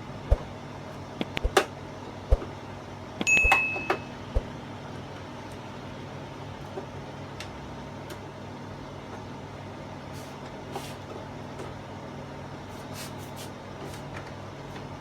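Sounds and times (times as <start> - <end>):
steady low hum: 0.0 - 7.2
ringing metallic clink: 3.3 - 4.1.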